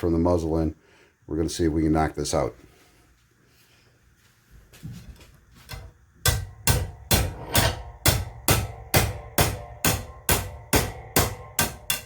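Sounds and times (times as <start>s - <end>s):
hammer striking metal rod: 5.7s - 12.0s.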